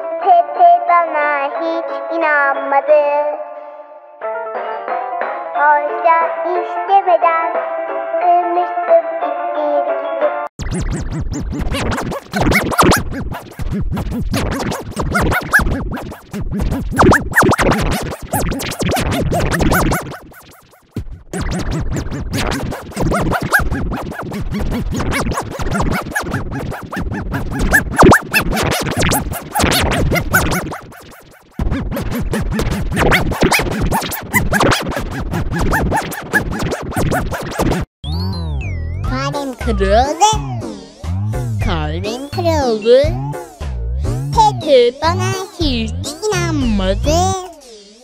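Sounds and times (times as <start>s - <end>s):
chopped stutter effects: 10.6s - 47.6s
electronic remix music: 10.6s - 48.0s.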